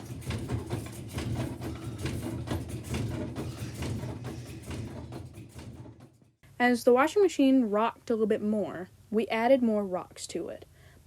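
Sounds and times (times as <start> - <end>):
rocks knocking inside drum: 0.0 - 6.2
washing machine motor hum: 0.0 - 6.2.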